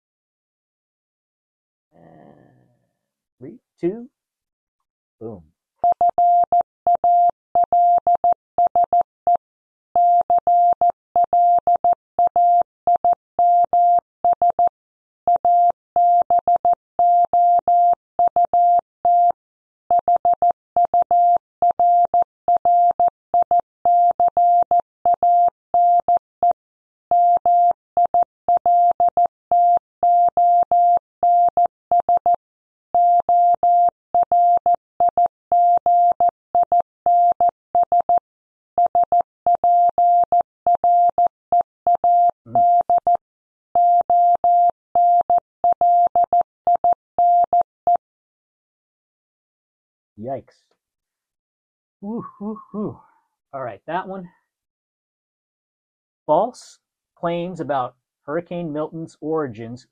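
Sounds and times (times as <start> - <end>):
morse code beeps: 41.9 - 43.2, 43.8 - 47.6.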